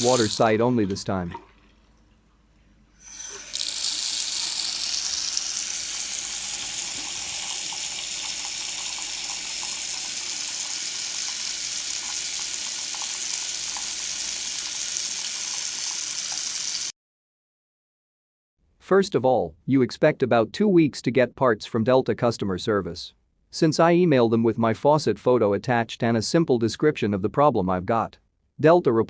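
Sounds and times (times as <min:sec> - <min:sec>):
water running into sink: 0:00.0 - 0:02.1, 0:03.0 - 0:16.9.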